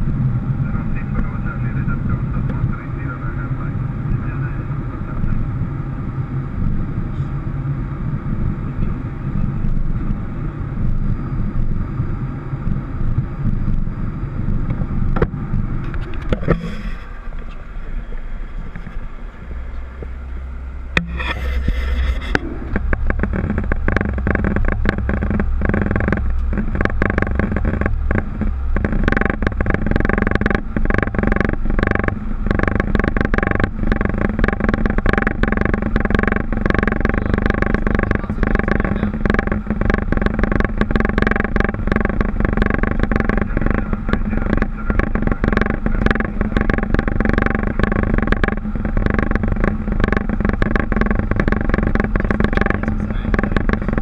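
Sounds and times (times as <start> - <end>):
deep rumble: 0.0 - 54.0
engine and airflow drone: 0.0 - 54.0
knocks and rattles: 20.9 - 54.0.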